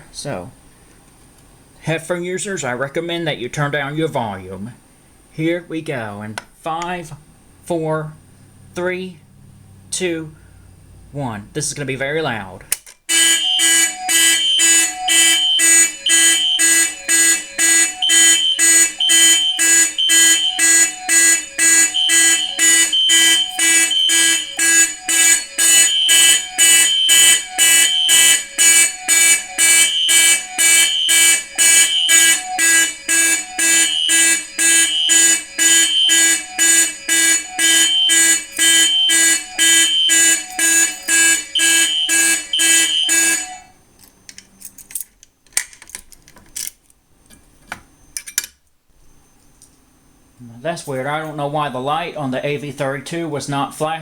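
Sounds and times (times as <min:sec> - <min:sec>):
fire alarm horns pulsing: 0:13.1 - 0:43.8.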